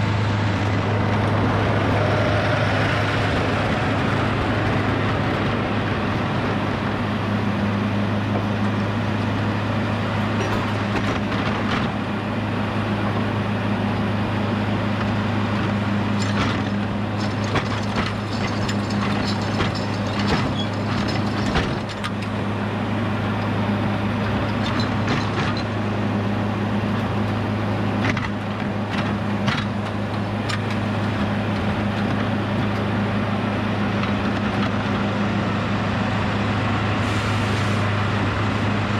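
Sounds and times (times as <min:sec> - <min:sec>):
sawmill engine hum: 0:00.0 - 0:38.9
wood crackling and knocking: 0:16.2 - 0:22.4.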